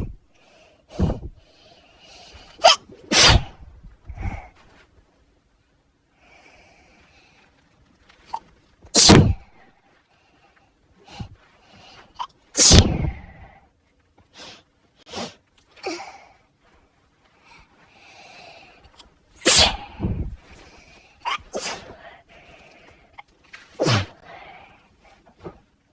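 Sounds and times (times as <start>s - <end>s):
person sneezing: 2.6s - 3.6s, 9.0s - 9.4s, 12.6s - 13.1s, 19.4s - 20.0s, 21.2s - 22.0s, 23.8s - 24.2s.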